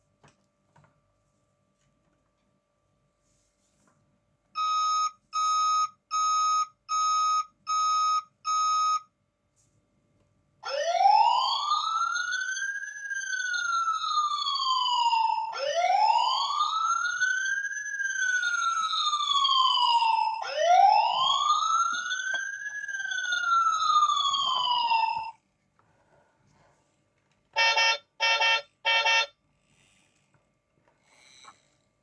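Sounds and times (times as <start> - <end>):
toy fire truck siren wailing: 10.6 - 25.4, 27.6 - 29.3.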